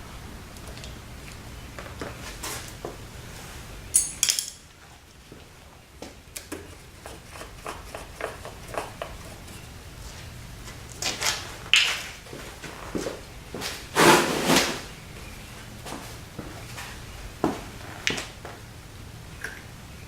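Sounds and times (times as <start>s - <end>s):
metallic clinks: 3.9s - 4.7s
hand tools clicking and tapping: 4.0s - 4.6s, 6.3s - 9.6s.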